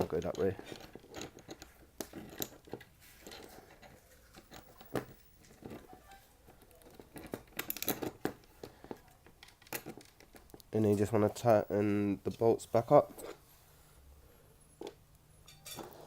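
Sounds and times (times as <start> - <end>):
skateboard parts clicking and knocking: 0.0 - 10.7.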